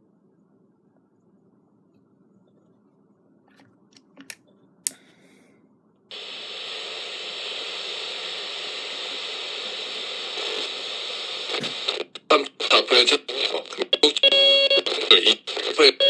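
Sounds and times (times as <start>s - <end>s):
radio control clicks: 4.0s - 5.0s, 6.6s - 12.1s
fm static hiss: 6.1s - 16.0s.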